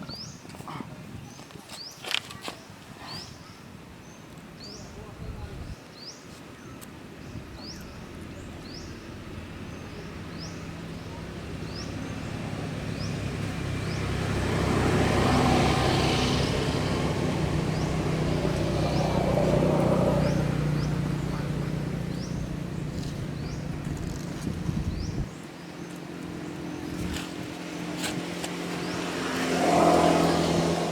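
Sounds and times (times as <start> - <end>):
vehicle passing on road: 8.2 - 30.9.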